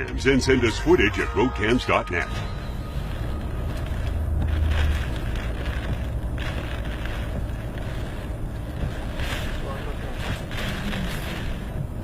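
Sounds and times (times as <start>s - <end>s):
car road rumble: 0.0s - 12.0s
wind buffeting car: 3.0s - 12.0s.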